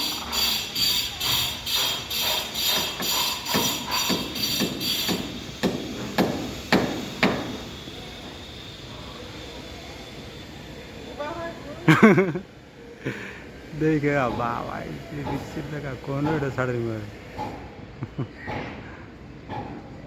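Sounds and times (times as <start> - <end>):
hammer strikes: 0.2 - 7.7.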